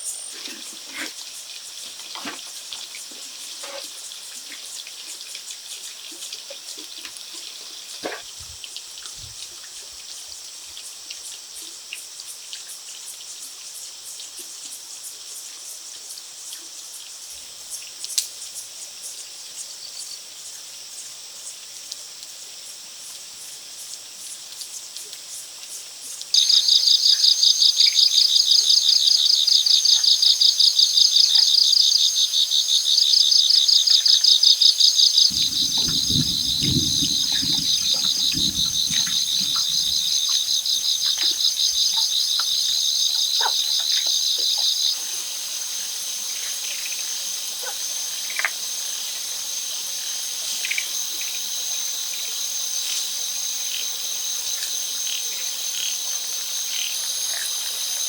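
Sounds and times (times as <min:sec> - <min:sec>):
insects pulsing high-pitched trill: 0:26.4 - 0:58.0
steady high insect chorus: 0:26.4 - 0:58.0
low rumbling: 0:35.3 - 0:42.7
faint scattered clicks: 0:35.3 - 0:42.8.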